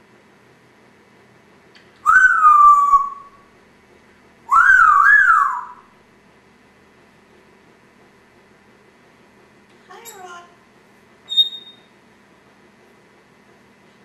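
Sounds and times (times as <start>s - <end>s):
parrot whistling: 2.0s - 3.4s, 4.5s - 5.9s, 11.3s - 11.9s.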